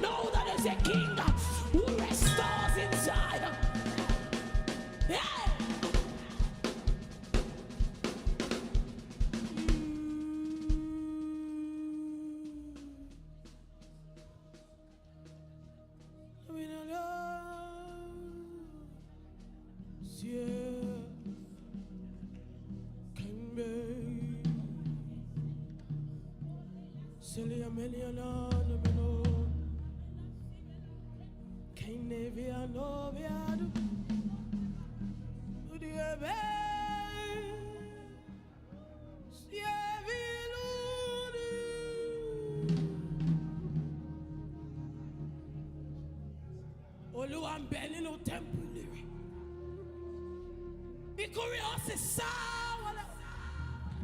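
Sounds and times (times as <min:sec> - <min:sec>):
person singing wordless note: 0:00.0 - 0:07.5
person singing: 0:00.0 - 0:13.7, 0:23.2 - 0:25.5, 0:35.6 - 0:45.8, 0:47.2 - 0:54.0
keyboard and bass accompaniment: 0:00.0 - 0:54.0
soft instrumental backing: 0:00.0 - 0:54.0.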